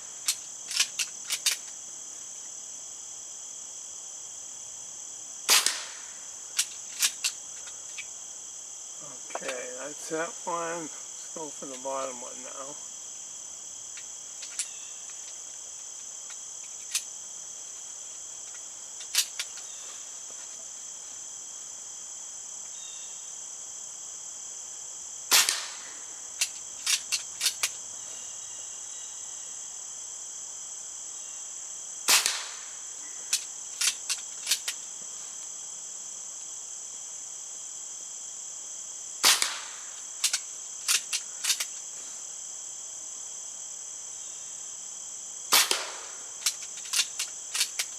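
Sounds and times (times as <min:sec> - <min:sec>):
high insect chirring: 0:00.0 - 0:47.9
air pistol shots: 0:05.5 - 0:06.2, 0:25.3 - 0:26.1, 0:32.1 - 0:34.6, 0:39.2 - 0:41.6, 0:45.5 - 0:47.8.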